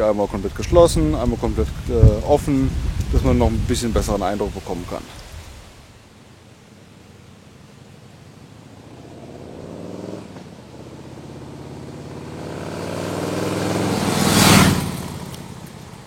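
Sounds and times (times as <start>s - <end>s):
motorcycle accelerating past: 8.6s - 16.0s.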